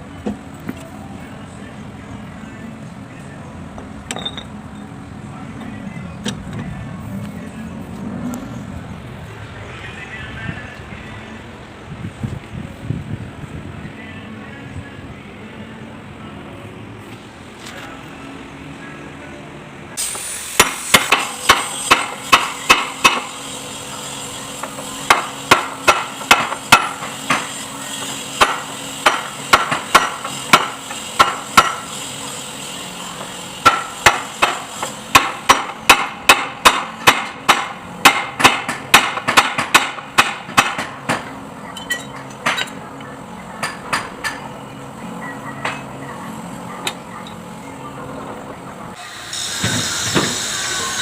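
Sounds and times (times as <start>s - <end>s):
hammer striking metal: 20.0s - 23.4s, 24.6s - 27.5s, 28.4s - 31.9s, 33.6s - 42.8s.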